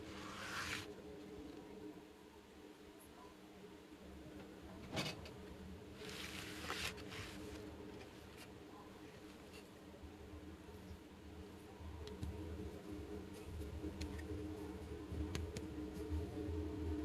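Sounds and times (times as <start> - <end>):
plastic rustling scrape: 0.0 - 0.9, 6.0 - 7.7.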